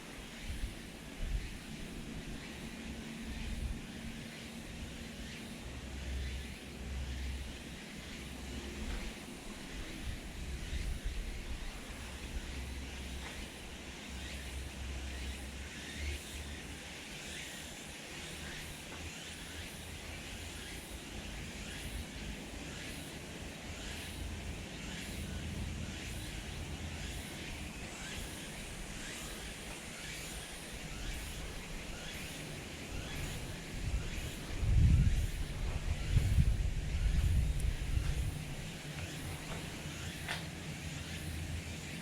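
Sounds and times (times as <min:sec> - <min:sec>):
wind on microphone rumble: 0:08.4 - 0:13.0, 0:27.8 - 0:40.1.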